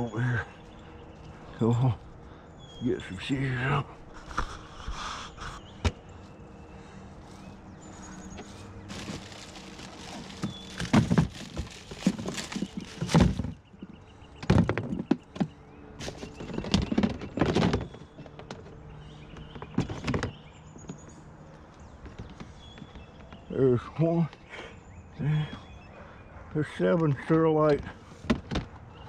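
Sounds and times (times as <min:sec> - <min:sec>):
plastic totes knocking and thudding: 0:08.9 - 0:18.6.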